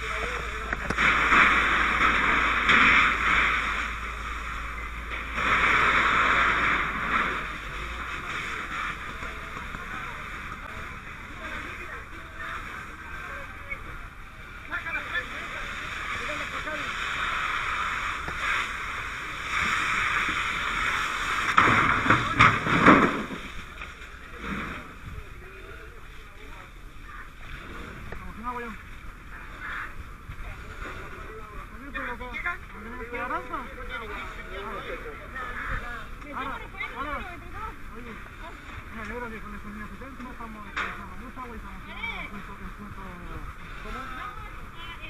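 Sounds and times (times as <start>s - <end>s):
fire hose nozzle spraying water: 0.0s - 11.8s, 14.8s - 24.9s
water hissing from fire hose: 0.0s - 45.0s
water splashing: 0.0s - 45.0s.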